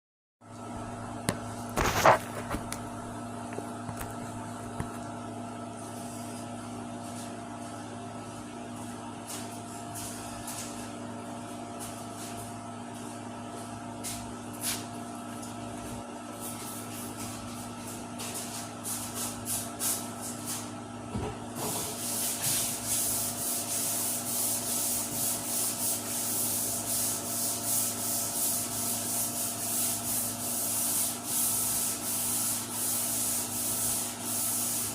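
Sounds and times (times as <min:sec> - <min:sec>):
steady hum: 0:00.5 - 0:34.9
sandpaper rubbing on metal: 0:22.0 - 0:34.9.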